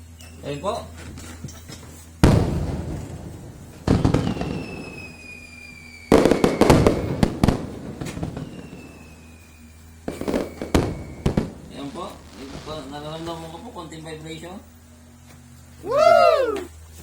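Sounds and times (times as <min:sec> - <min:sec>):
fireworks banging and crackling: 0:01.1 - 0:13.7
fireworks whistling: 0:01.9 - 0:13.8.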